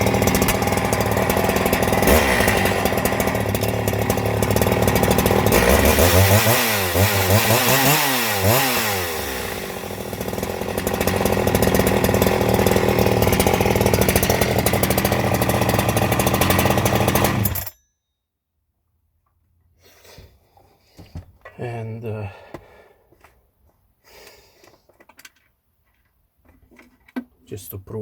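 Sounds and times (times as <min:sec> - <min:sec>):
chainsaw engine revving: 0:00.0 - 0:17.7.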